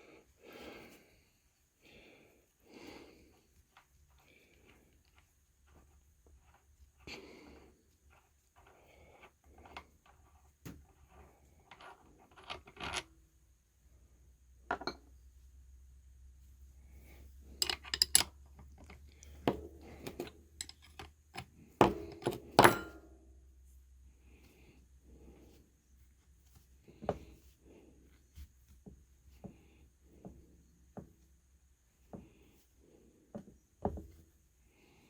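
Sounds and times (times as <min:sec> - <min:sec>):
metal parts clinking and clunking: 0:17.5 - 0:23.0.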